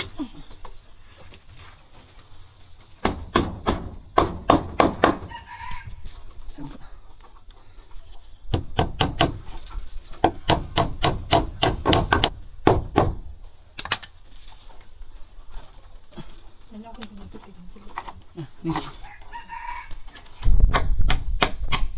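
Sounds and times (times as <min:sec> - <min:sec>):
sharp knocks and taps: 0:10.2 - 0:13.2.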